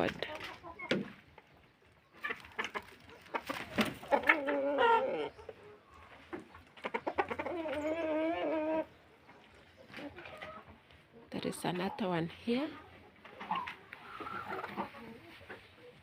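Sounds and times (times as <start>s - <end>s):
chickens calling: 0.0s - 16.0s.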